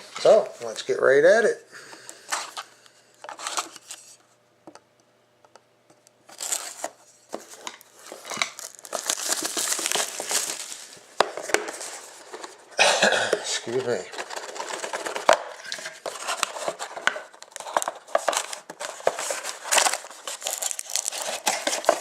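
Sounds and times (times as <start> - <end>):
plastic wrapping crinkling and tearing: 6.3 - 12.6, 13.5 - 22.0.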